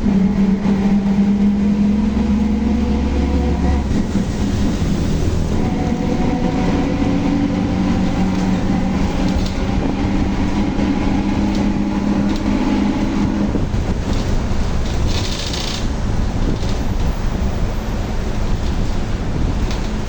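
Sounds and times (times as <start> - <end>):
differential howl: 0.0 - 14.0
drivetrain and road rumble: 0.0 - 20.0.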